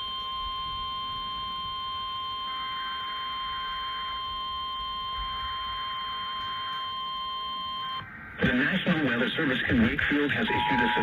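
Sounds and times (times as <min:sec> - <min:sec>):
steady alarm tone: 0:00.0 - 0:08.0, 0:10.4 - 0:11.0
radio hiss: 0:02.4 - 0:11.0.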